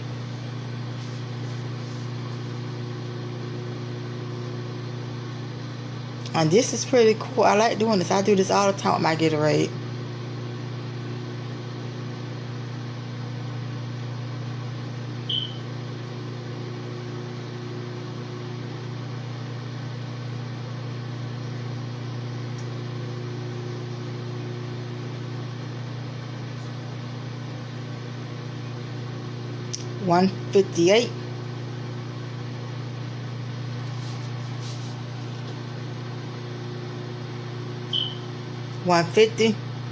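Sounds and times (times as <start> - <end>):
microwave oven humming: 0.0 - 39.9
brief high chirp: 15.3 - 15.6, 37.9 - 38.2.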